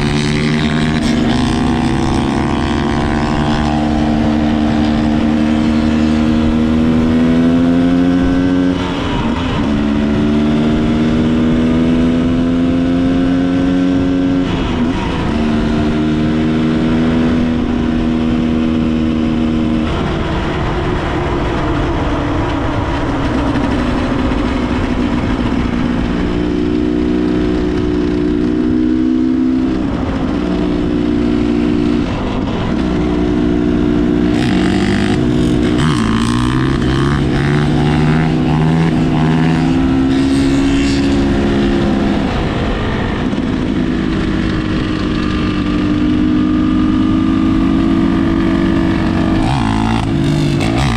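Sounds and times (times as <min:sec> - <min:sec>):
motorcycle engine running: 0:00.0 - 0:50.9.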